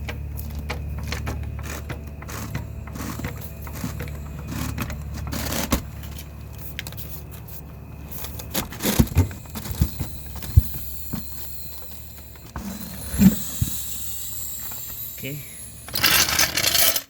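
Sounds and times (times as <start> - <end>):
car jack being pumped: 0.0 - 6.2, 8.4 - 17.0
steady low hum: 0.0 - 17.0.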